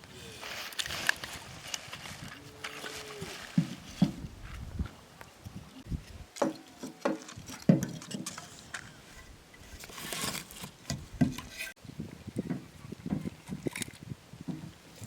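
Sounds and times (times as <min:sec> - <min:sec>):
rustling: 0:00.3 - 0:04.8.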